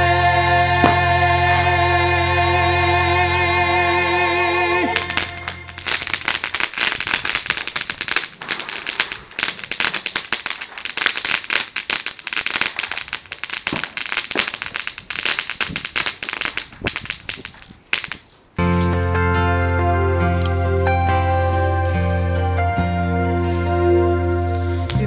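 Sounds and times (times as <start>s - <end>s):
fireworks crackling: 0.8s - 1.1s, 4.8s - 18.6s, 24.5s - 25.0s.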